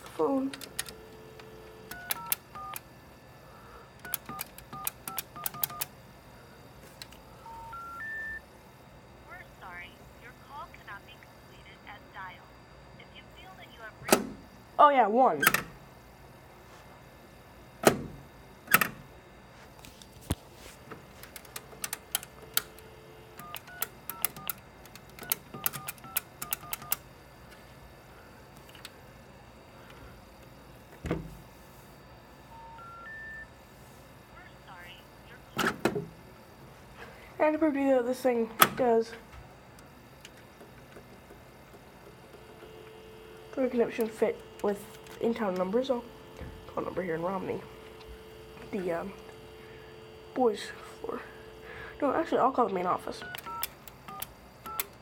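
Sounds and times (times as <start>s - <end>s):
phone dial tone: 0.5s - 2.9s, 4.0s - 6.0s, 7.0s - 8.5s, 21.4s - 27.1s, 32.5s - 33.6s, 42.3s - 55.0s
keypress clicks: 1.9s - 2.8s, 4.0s - 5.9s, 23.4s - 27.0s, 53.2s - 55.0s
touch-tone key beeps: 4.1s - 5.9s, 25.2s - 27.0s
dial tone: 7.4s - 8.4s, 32.5s - 33.5s
handset and hook clicks: 23.4s - 27.0s.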